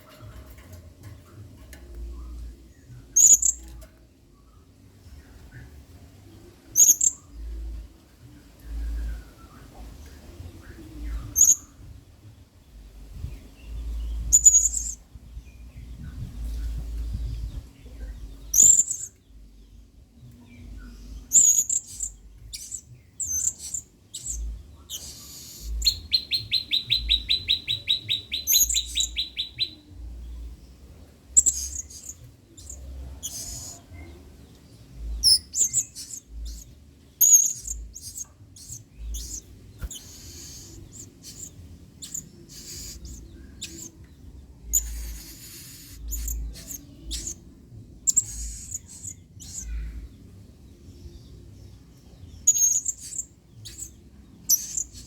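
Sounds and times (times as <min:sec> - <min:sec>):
parrot chirping: 0:35.2 - 0:43.9, 0:44.7 - 0:47.4.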